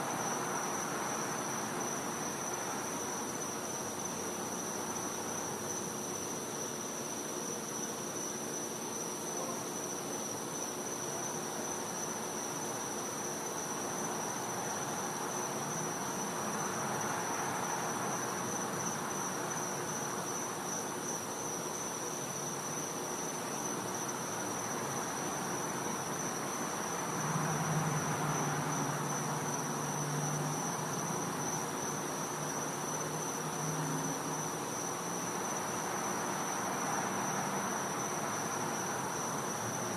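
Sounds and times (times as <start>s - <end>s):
high-pitched insect trill: 0.0s - 39.9s.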